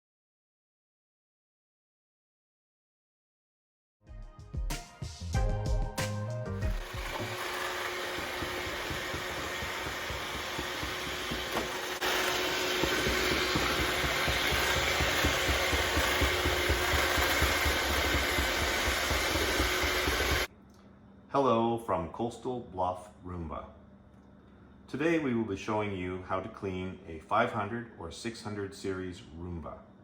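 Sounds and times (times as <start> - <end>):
robot vacuum whirring: 6.7 - 20.5.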